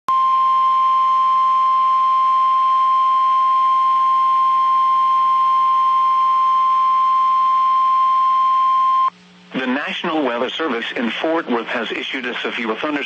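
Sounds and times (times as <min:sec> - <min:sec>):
steady high alarm tone: 0:00.1 - 0:09.1
faint radio static: 0:09.2 - 0:13.0.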